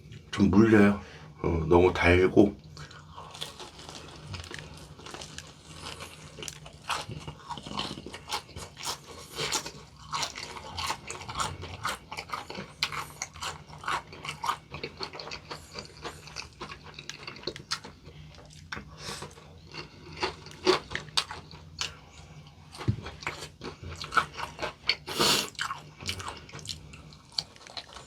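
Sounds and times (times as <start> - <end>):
crunching and chewing fried food: 2.6 - 28.0.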